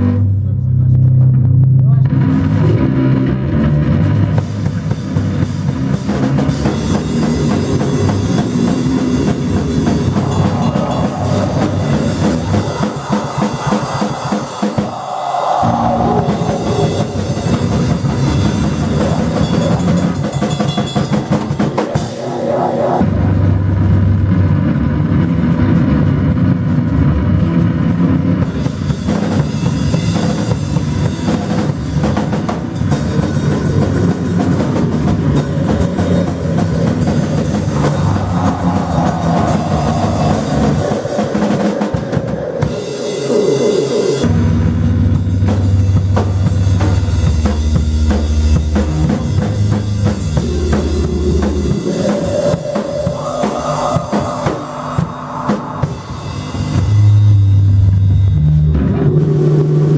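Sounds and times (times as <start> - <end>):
pounding drum kit: 1.4 - 59.9
live band playing loud music: 2.8 - 15.0, 15.7 - 23.8.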